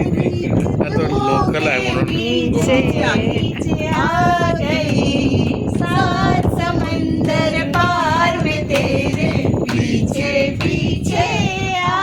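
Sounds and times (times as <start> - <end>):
people singing without accompaniment: 0.0 - 12.0.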